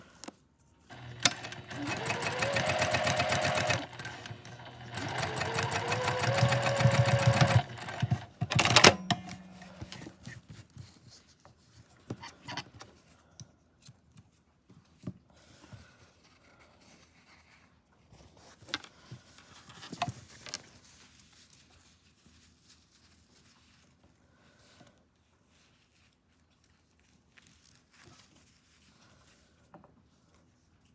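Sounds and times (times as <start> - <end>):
sewing machine stitching: 0.9 - 10.1.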